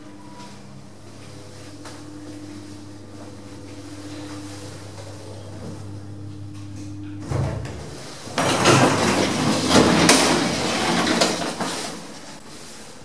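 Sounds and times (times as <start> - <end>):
lift humming: 0.0 - 12.4
lift doors rattling open: 7.3 - 12.0.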